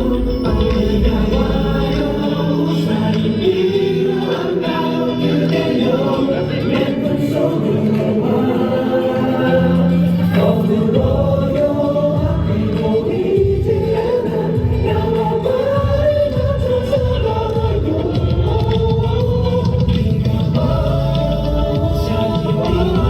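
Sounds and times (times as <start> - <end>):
backing track music: 0.0 - 23.0
male vocal group singing: 0.0 - 23.0.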